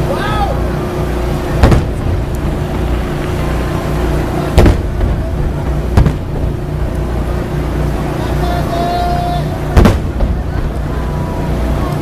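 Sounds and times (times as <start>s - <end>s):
steady low rumble: 0.0s - 12.0s
fireworks bursting: 1.3s - 8.2s, 9.4s - 11.8s.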